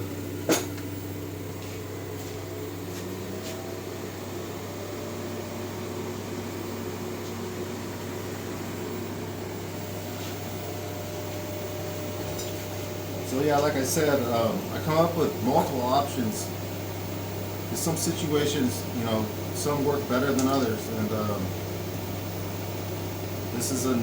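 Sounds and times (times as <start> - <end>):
electrical hum and fan noise: 0.0 - 24.0.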